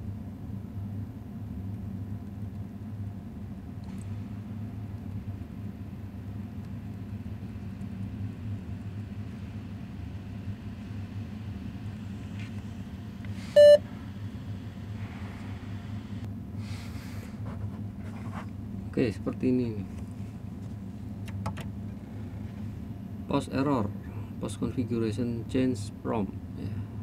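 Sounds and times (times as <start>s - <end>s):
low electrical hum: 0.0s - 27.0s
short loud electronic beep: 13.6s - 13.8s.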